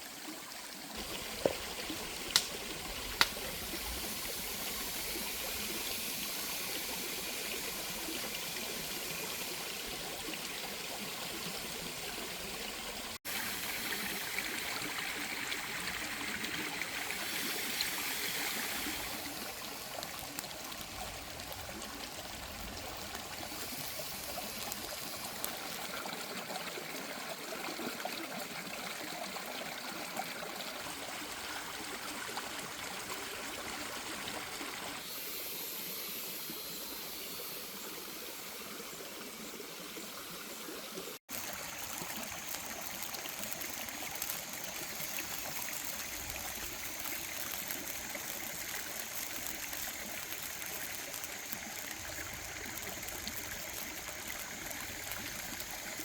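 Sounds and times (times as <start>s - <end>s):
water running and trickling: 0.0s - 56.0s.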